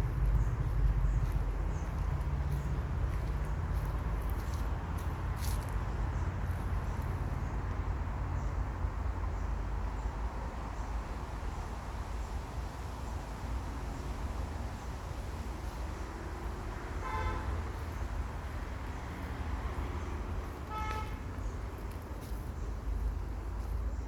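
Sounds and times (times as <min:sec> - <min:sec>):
distant traffic rumble: 0:00.0 - 0:24.0
pitched honk: 0:20.7 - 0:21.2.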